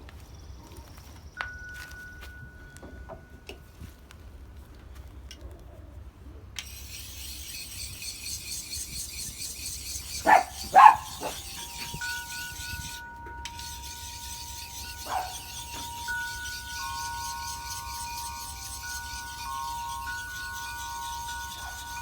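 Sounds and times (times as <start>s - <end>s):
sharpener rasping on steel blade: 6.6s - 22.0s
dog barking loudly: 10.2s - 11.4s, 15.1s - 15.4s.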